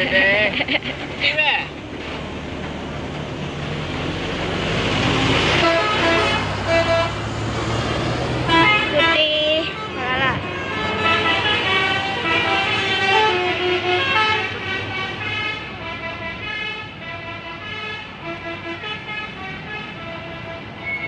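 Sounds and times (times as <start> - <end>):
multi-tone bus horn tune: 5.2 - 7.5, 8.2 - 21.0.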